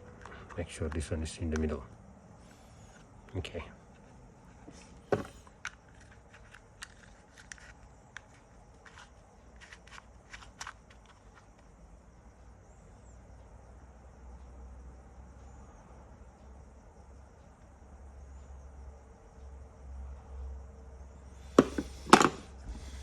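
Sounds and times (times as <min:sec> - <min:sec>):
small clicks and taps of parts: 0:05.1 - 0:11.8.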